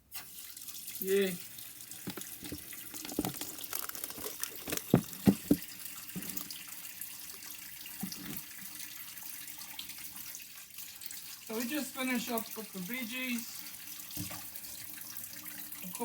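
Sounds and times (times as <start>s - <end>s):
tap running into sink: 2.0s - 6.6s, 8.0s - 8.5s
clunks of things in sink: 2.1s - 3.4s, 4.6s - 5.6s
soft knocks: 4.8s - 5.6s.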